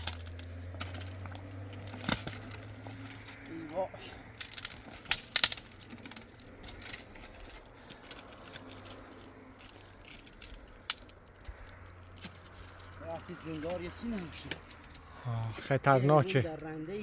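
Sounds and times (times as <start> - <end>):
sharp clicks and clatters: 4.2 - 15.1.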